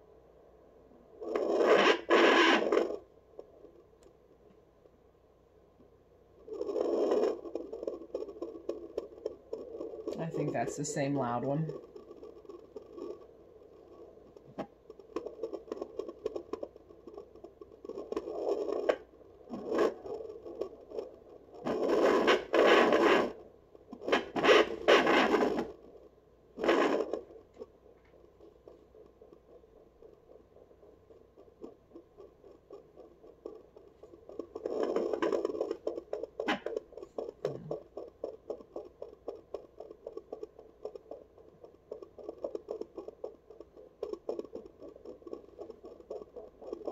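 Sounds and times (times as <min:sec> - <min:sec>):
probe scraping over fur: 0:01.2 - 0:03.1, 0:06.4 - 0:25.9, 0:26.6 - 0:46.9
fetal heartbeat through doppler speaker: 0:06.4 - 0:46.9.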